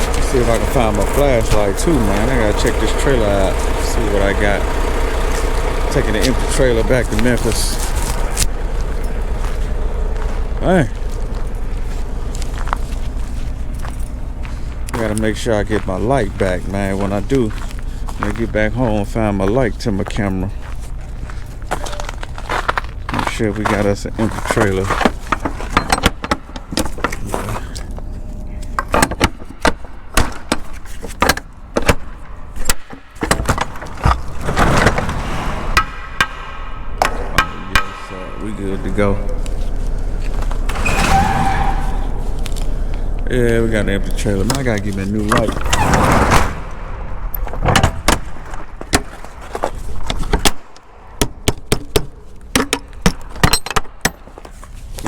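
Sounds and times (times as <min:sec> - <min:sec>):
low rumble: 0:00.0 - 0:18.4, 0:33.6 - 0:50.1
footsteps crunching on frozen snow: 0:00.0 - 0:25.7, 0:38.1 - 0:40.7
trailer doors clanking: 0:00.0 - 0:54.8.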